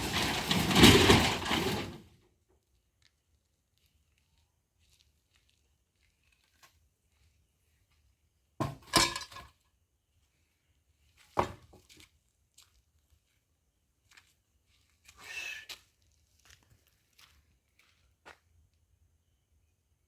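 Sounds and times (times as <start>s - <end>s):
clattering knocks: 0.0s - 2.0s.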